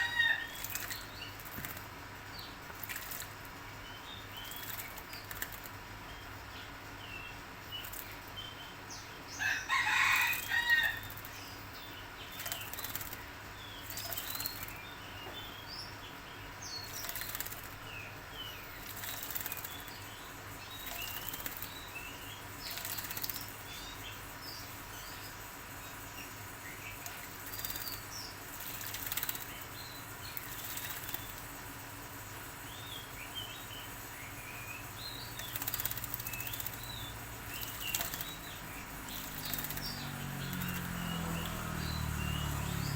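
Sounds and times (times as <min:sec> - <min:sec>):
bird wings fluttering: 0:00.0 - 0:02.0, 0:02.7 - 0:03.6, 0:04.4 - 0:05.8, 0:09.8 - 0:11.4, 0:12.3 - 0:14.8, 0:16.8 - 0:17.8, 0:18.7 - 0:23.6, 0:26.9 - 0:32.6, 0:35.2 - 0:42.4.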